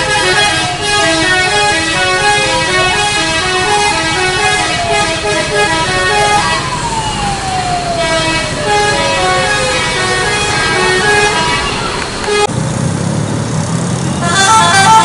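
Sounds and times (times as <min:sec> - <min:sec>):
bus multi-tone horn tune: 0:00.0 - 0:12.5, 0:14.1 - 0:15.0
siren-like sliding tone: 0:04.4 - 0:12.5.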